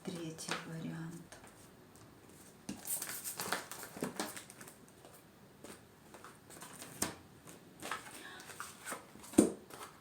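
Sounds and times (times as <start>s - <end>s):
cards slapping and rustling: 2.3s - 10.0s.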